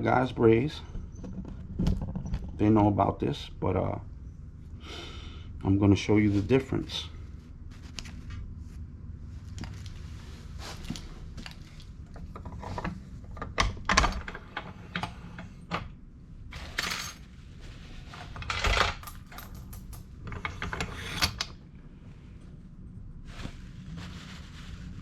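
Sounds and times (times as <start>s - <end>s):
steady low hum: 0.0s - 25.0s
metal tools clinking: 18.2s - 21.4s.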